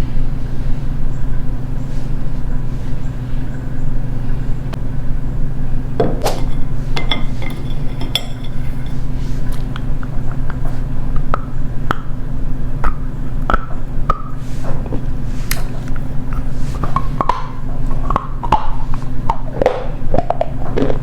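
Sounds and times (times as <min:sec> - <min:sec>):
steady low hum: 0:00.0 - 0:21.0
hard clinks against a dish: 0:06.3 - 0:09.1.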